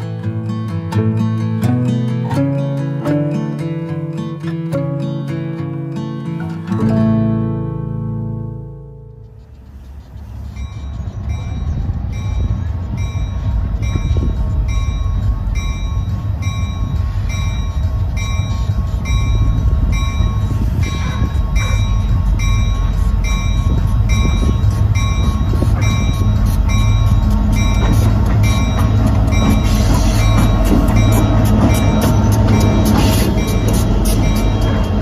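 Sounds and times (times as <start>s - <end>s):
model train engine rumble: 9.3s - 35.0s
bell ringing: 10.5s - 35.0s.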